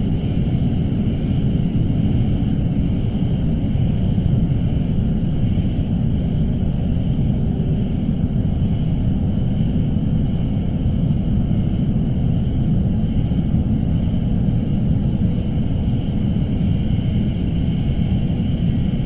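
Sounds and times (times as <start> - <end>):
low rumbling drone: 0.0 - 19.0.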